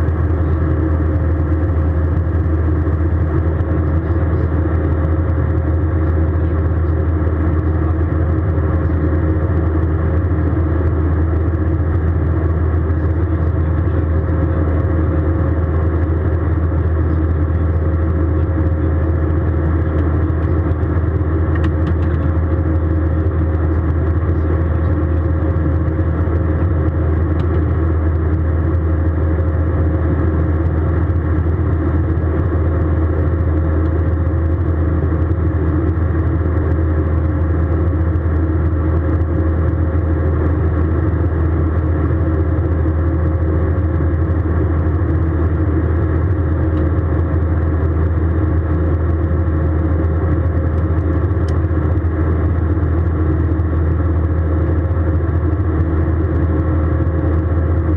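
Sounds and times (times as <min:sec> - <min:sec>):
deep rumble: 0:00.0 - 0:57.9
faint steady hum: 0:00.0 - 0:57.9
jet engine and airflow drone: 0:00.0 - 0:57.9.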